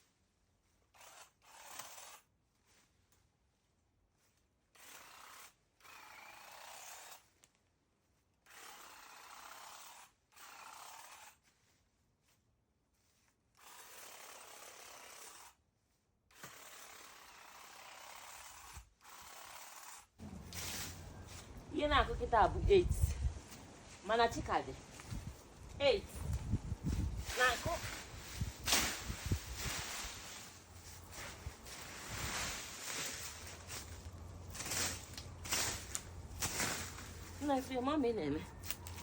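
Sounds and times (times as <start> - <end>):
garden tool rasping through grass: 16.3 - 22.7, 23.4 - 39.0.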